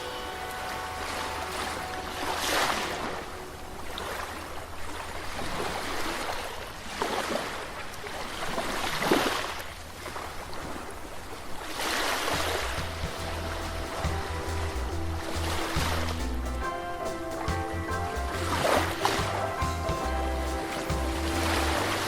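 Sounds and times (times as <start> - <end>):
steady low rumble: 12.4 - 16.7, 17.5 - 22.0.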